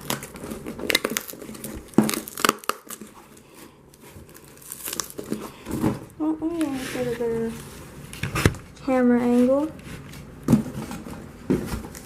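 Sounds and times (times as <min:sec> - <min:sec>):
packaging crinkling and tearing: 0:00.0 - 0:05.9.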